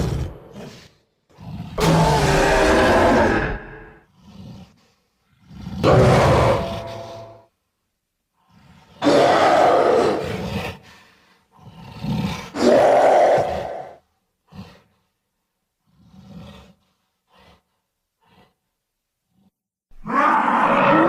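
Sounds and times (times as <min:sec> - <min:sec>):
ape monster roaring: 0:00.0 - 0:00.8, 0:01.4 - 0:04.1, 0:05.7 - 0:07.3, 0:08.9 - 0:10.8, 0:11.6 - 0:14.0, 0:20.0 - 0:21.0.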